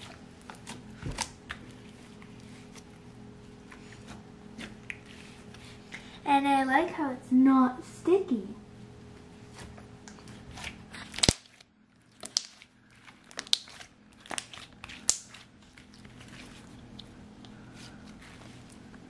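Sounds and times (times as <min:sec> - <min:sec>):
slime crackling pops: 0:11.1 - 0:11.6, 0:12.2 - 0:12.6, 0:13.3 - 0:15.4.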